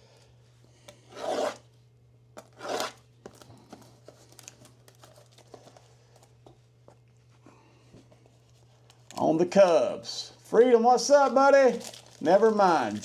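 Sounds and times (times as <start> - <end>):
packaging clicks and crinkles: 3.2 - 6.3, 11.3 - 13.0
packaging tearing: 11.7 - 13.0.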